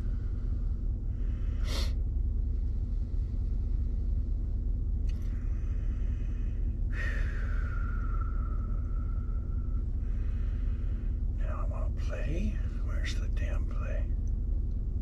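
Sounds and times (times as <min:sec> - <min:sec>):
vehicle engine idling: 0:00.0 - 0:15.0
hiss with whistling tone: 0:07.0 - 0:10.0.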